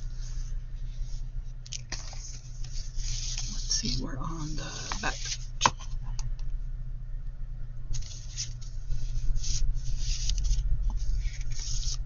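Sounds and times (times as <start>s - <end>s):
steady low hum: 0.0s - 12.0s
paper pages rustling: 1.7s - 4.0s, 4.7s - 5.5s, 7.9s - 12.0s.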